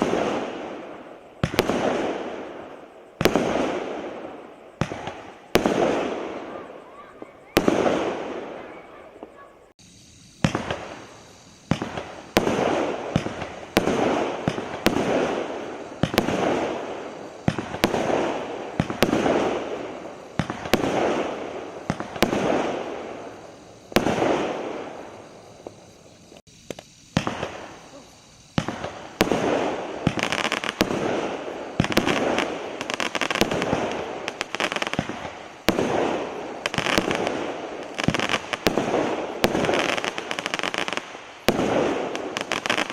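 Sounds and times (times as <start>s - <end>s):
fireworks bangs: 0.0s - 42.9s.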